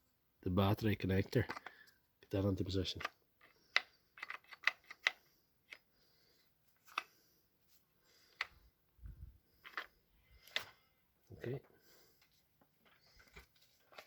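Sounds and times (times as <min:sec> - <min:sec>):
plastic parts clicking together: 0:01.3 - 0:02.0, 0:02.9 - 0:05.9, 0:08.3 - 0:08.6, 0:09.6 - 0:10.8.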